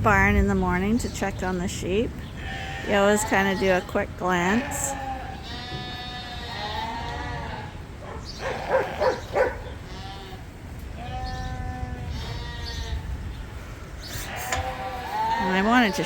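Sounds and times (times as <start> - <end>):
steady low rumble: 0.0 - 4.4
lambs bleating: 2.4 - 13.0, 14.1 - 16.0.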